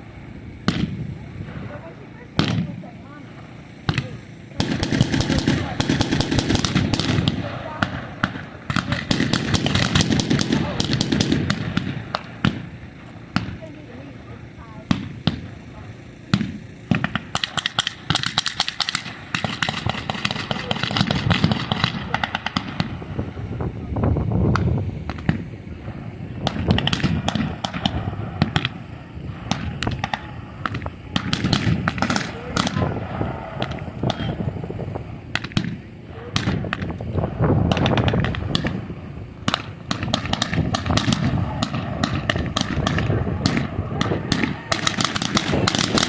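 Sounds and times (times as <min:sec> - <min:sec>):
low background rumble: 0:00.0 - 0:46.0
blank gunshots: 0:03.9 - 0:12.7, 0:16.3 - 0:23.0, 0:29.4 - 0:33.0, 0:39.4 - 0:46.0.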